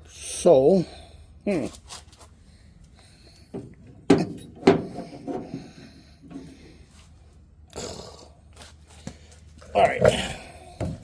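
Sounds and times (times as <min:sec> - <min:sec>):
parts clattering and rubbing: 0:03.3 - 0:07.2.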